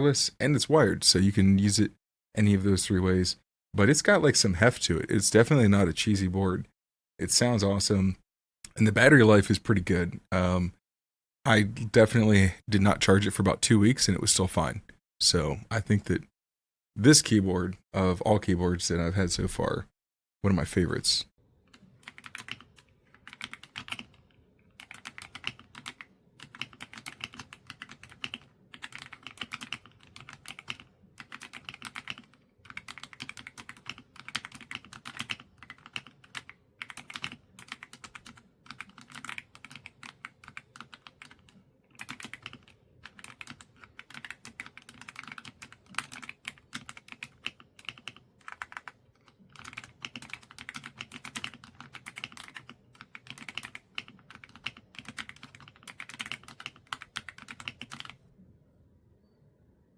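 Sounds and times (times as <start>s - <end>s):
mechanical keyboard typing: 21.7s - 58.2s.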